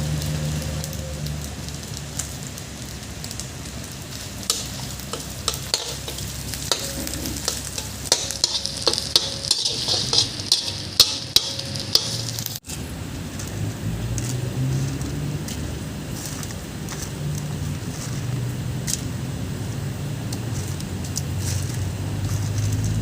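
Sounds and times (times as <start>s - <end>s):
food sizzling in hot oil: 0.0s - 23.0s
metal spoon scraping pot: 4.5s - 12.5s.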